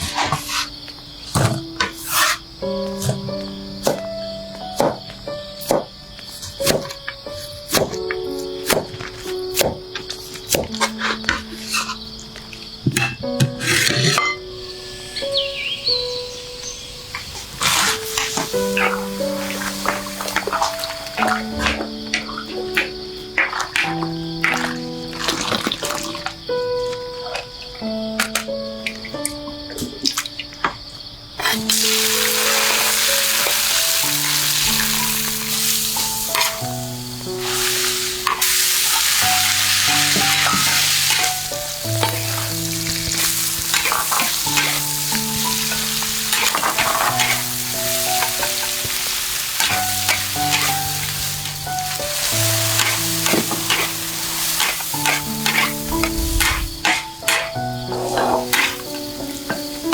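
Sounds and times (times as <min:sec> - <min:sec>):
background music melody: 0:00.0 - 0:59.9
food frying in oil: 0:15.6 - 0:22.3, 0:31.4 - 0:59.9
stirring clicks and scrapes: 0:42.0 - 0:47.5, 0:51.9 - 0:59.0.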